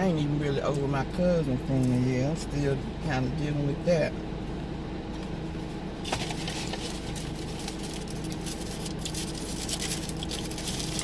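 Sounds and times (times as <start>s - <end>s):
car engine humming: 0.0s - 11.0s
fast-food packaging crinkling: 6.1s - 11.0s.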